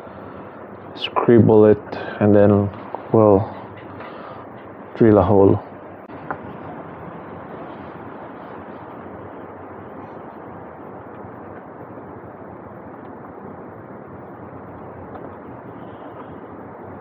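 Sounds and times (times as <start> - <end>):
steady background noise: 0.0 - 17.0.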